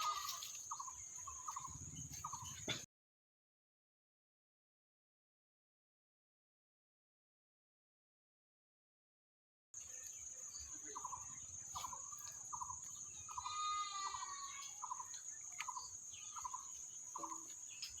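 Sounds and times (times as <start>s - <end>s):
high insect trill: 0.0s - 2.7s, 9.8s - 18.0s.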